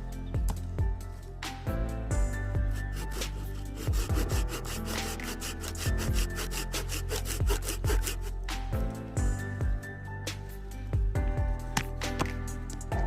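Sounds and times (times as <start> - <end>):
background music: 0.0 - 13.0
hand saw cutting wood: 2.7 - 8.4.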